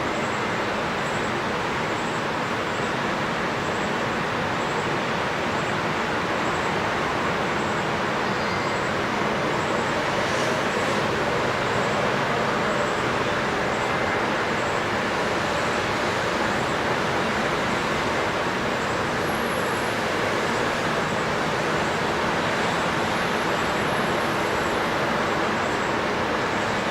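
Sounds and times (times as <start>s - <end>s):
water rushing: 0.0s - 26.9s
faint bird chirps: 8.2s - 9.0s.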